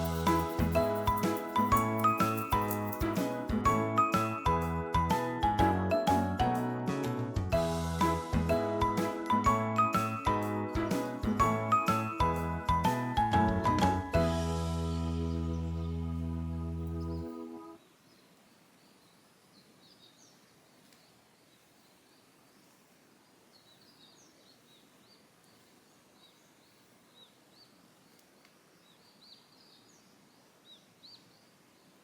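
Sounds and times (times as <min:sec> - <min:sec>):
small birds chirping: 0:00.0 - 0:03.2, 0:16.9 - 0:32.0
low steady hiss: 0:14.2 - 0:32.0.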